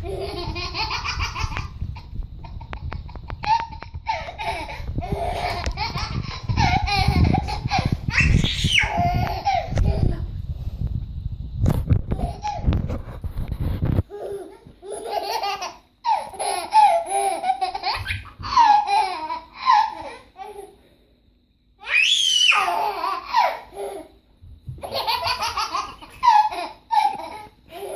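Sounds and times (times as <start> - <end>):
baby laughing: 0.0 - 10.2, 12.1 - 12.7, 14.1 - 20.8, 22.5 - 24.1, 24.8 - 27.9.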